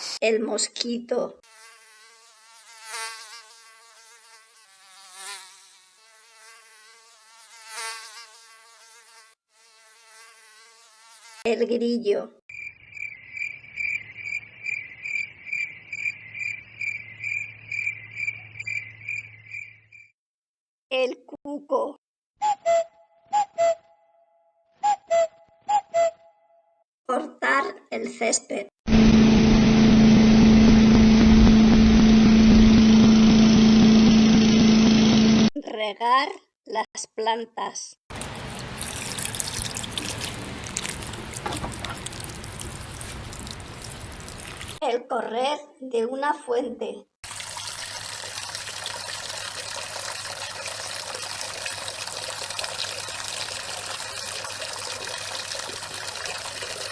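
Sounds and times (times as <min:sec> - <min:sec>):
cricket chirping: 0:12.5 - 0:20.1
water pouring onto plants: 0:38.1 - 0:44.8, 0:47.2 - 0:56.9.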